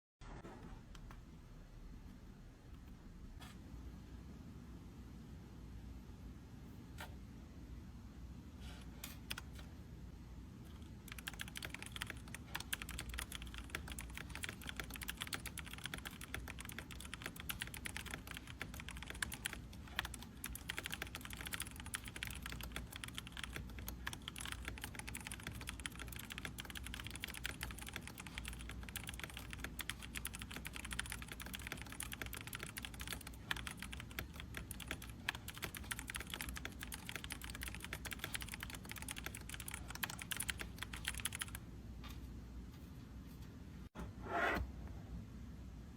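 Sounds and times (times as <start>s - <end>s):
fast typing on keyboard: 11.0s - 41.6s.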